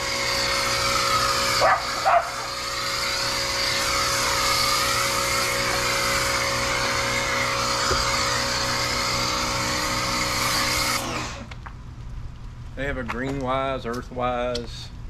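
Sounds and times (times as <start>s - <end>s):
pressure washer motor hum: 0.0s - 11.6s
dog barking: 1.6s - 2.6s.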